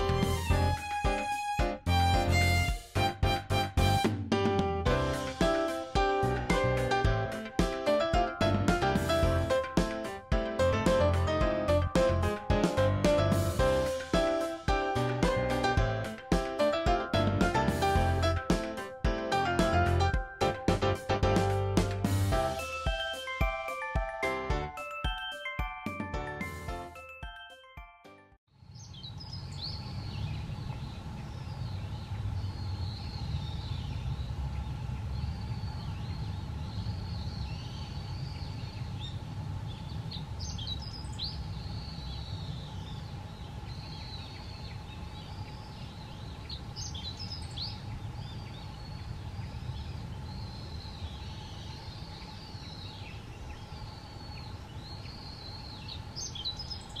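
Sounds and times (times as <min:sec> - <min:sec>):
birds chirping and twittering: 0:28.6 - 0:57.0
sharp sweeping bird calls: 0:28.8 - 0:57.0
steady low rumble: 0:29.1 - 0:57.0.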